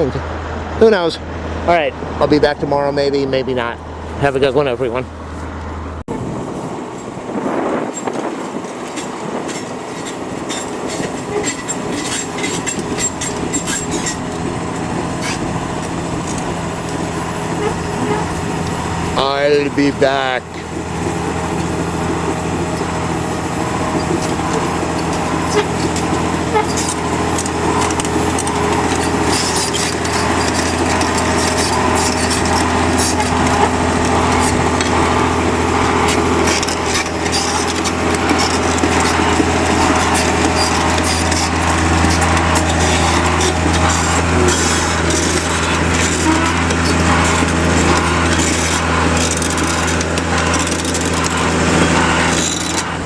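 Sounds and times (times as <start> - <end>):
loud low engine hum: 0.0 - 53.0
short clicks and scrapes: 8.0 - 14.2, 24.2 - 35.1, 36.0 - 53.0.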